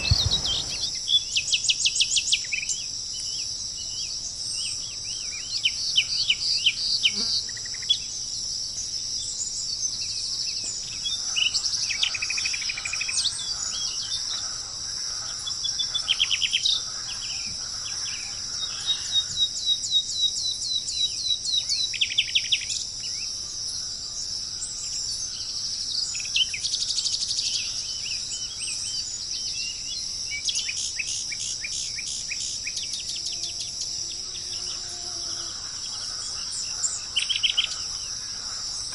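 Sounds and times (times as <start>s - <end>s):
insects buzzing: 0.0s - 1.0s, 29.1s - 38.9s
songbirds trilling and chirping: 0.0s - 1.0s, 2.7s - 38.9s.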